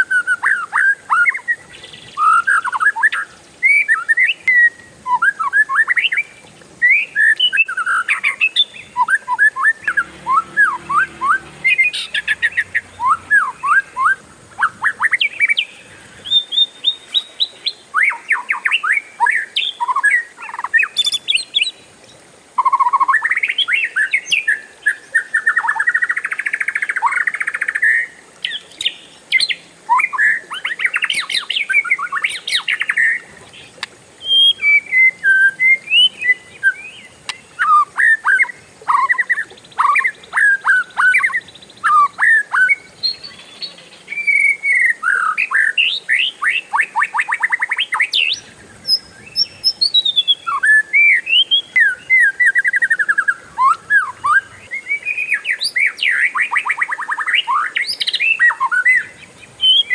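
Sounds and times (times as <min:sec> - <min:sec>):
bird singing with rapid trill: 0:06.8 - 0:15.7, 0:34.2 - 0:59.9.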